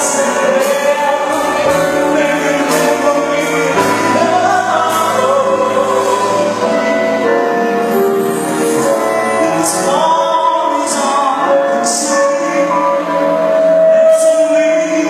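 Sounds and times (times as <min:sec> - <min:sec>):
bass line: 0:00.0 - 0:11.4
song with singing: 0:00.0 - 0:15.0.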